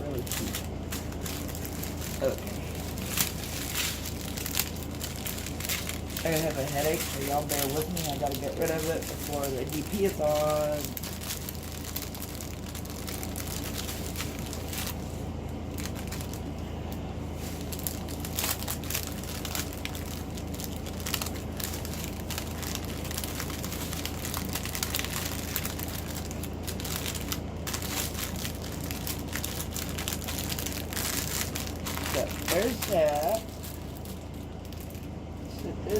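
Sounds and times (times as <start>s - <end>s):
plastic packaging crinkling: 0.0s - 35.9s
steady low hum: 0.0s - 35.9s.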